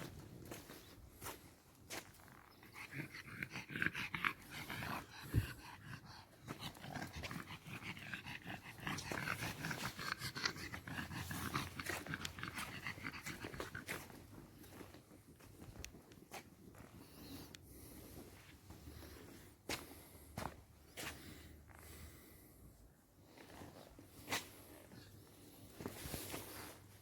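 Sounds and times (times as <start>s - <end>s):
dog panting rapidly: 2.6s - 14.8s.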